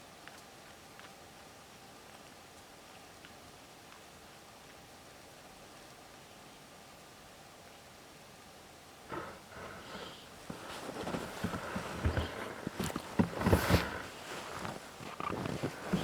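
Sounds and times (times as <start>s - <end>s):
footsteps crunching in snow: 9.1s - 16.0s.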